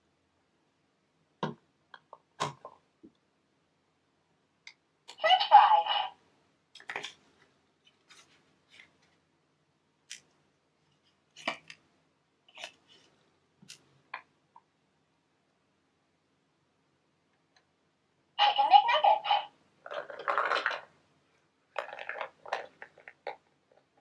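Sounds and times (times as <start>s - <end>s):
plastic toy pieces clicking: 19.8s - 20.9s.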